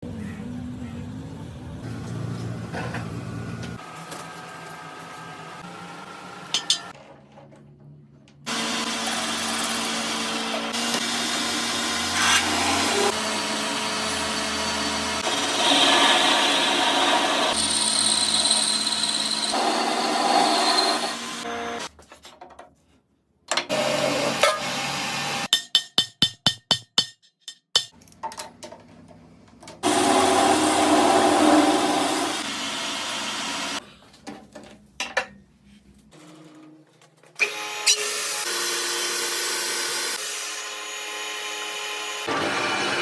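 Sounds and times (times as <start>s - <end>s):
metal lathe cutting: 8.5s - 21.9s, 29.8s - 33.8s, 37.5s - 43.0s.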